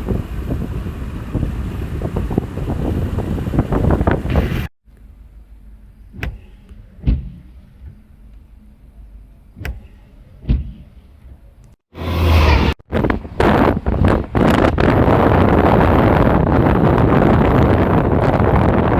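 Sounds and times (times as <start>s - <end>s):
wind buffeting microphone: 0.0s - 4.7s, 12.5s - 18.9s.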